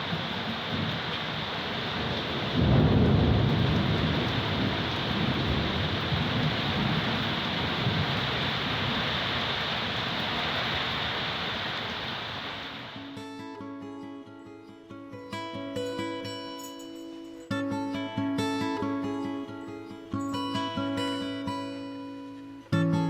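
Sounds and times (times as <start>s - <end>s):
low thunder rumble: 0.0s - 10.0s
heavy rain: 0.0s - 13.2s
lo-fi guitar music: 13.0s - 23.0s.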